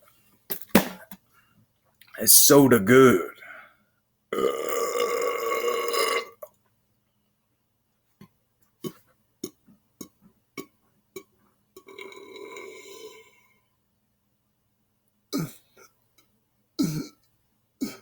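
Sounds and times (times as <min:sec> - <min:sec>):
man burping: 0:04.3 - 0:06.5, 0:08.8 - 0:13.3, 0:15.3 - 0:15.9, 0:16.8 - 0:18.0.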